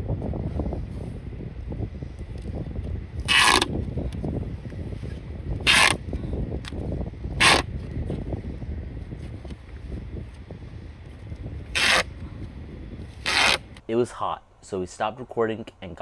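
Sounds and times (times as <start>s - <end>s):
low rumble: 0.0s - 13.8s
tape pulled off roll: 3.2s - 3.8s, 5.0s - 6.8s, 7.4s - 7.9s, 11.6s - 12.2s, 13.0s - 13.8s.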